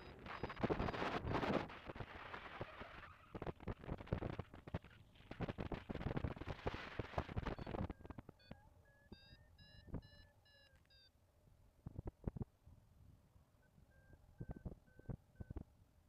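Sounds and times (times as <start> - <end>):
variometer short beeps: 7.5 - 11.1, 13.9 - 15.6.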